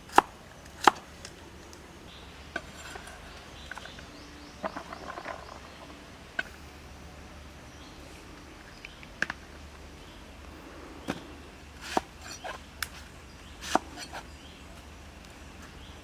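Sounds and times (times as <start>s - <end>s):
low steady background noise: 0.0s - 16.0s
sharp chopping knocks: 13.6s - 14.2s.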